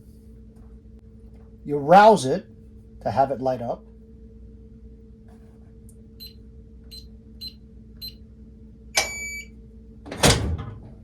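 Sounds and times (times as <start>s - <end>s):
keypad short high beeps: 9.0s - 9.5s
longer lower beep: 9.0s - 9.5s.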